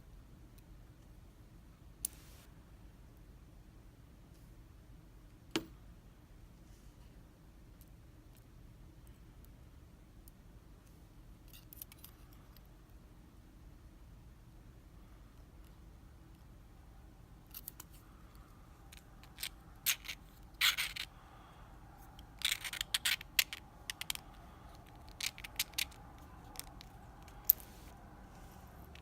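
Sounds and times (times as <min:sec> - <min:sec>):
tools scraping padlock: 0:18.9 - 0:21.1, 0:22.2 - 0:27.9
small metal clicks on padlock: 0:24.8 - 0:26.9.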